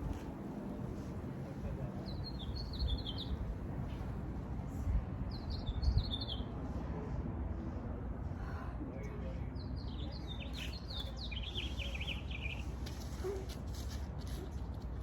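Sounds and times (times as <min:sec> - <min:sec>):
bird chirping: 0:02.1 - 0:03.4.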